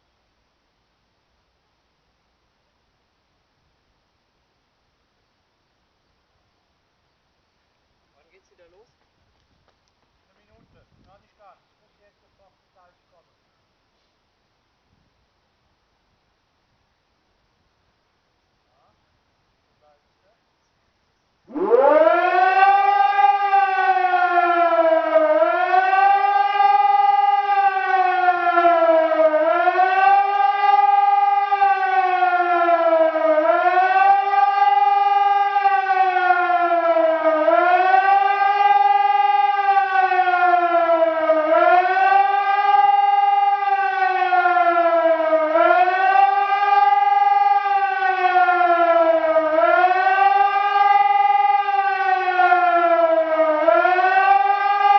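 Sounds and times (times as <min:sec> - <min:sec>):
electronic siren wailing: 0:21.5 - 0:54.9.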